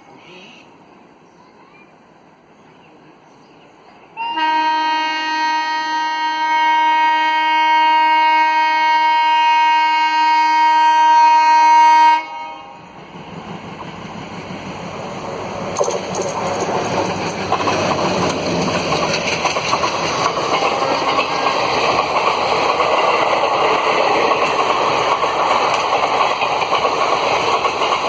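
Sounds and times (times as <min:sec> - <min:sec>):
train rumble: 0:00.0 - 0:28.0
locomotive air horn blast: 0:04.2 - 0:12.8.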